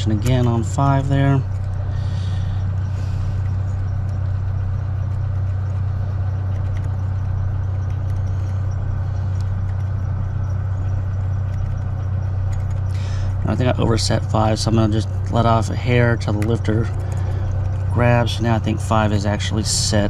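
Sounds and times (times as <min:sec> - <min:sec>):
low mechanical hum: 0:00.0 - 0:20.0.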